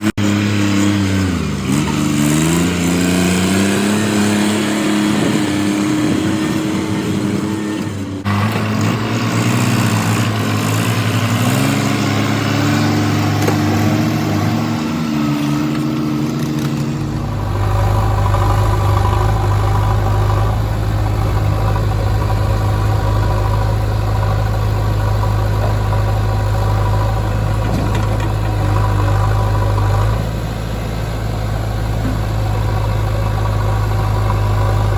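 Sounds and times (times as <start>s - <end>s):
diesel engine working: 0.0s - 34.9s.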